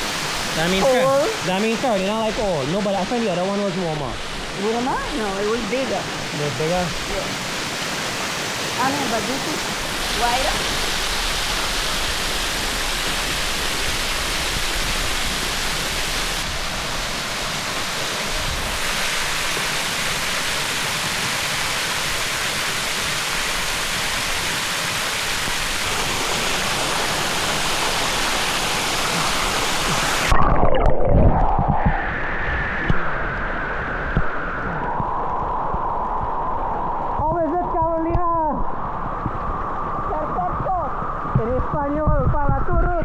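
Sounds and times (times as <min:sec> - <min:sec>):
waterfall rushing: 0:00.0 - 0:30.6.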